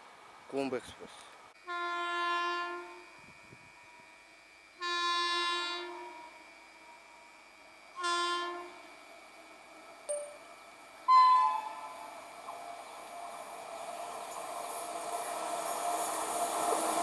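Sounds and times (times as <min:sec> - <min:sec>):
locomotive horn blasts: 0:01.6 - 0:03.3, 0:04.8 - 0:06.6, 0:08.0 - 0:08.9, 0:11.1 - 0:12.1.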